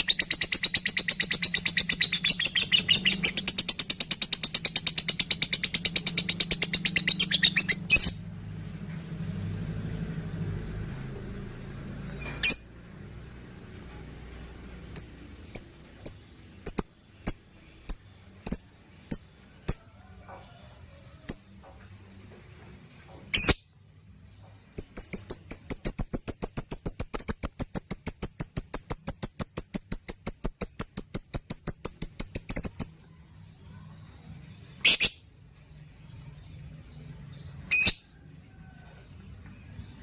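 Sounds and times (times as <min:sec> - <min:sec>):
lovebird chirping: 0:00.0 - 0:08.3, 0:12.1 - 0:12.8, 0:14.9 - 0:20.0, 0:24.7 - 0:38.1.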